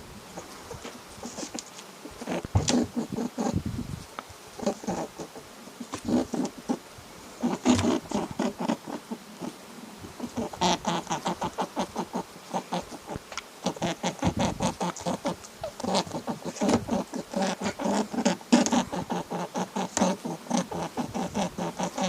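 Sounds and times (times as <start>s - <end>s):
animals making rapid short calls: 7.4s - 9.5s, 10.2s - 22.0s.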